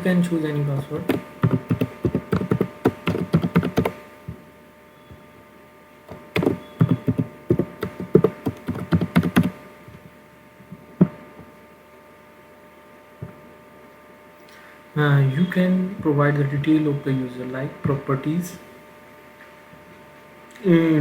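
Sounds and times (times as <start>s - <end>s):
faint electrical hum: 0.0s - 21.0s
typing on computer keyboard: 1.0s - 4.0s, 6.1s - 9.6s.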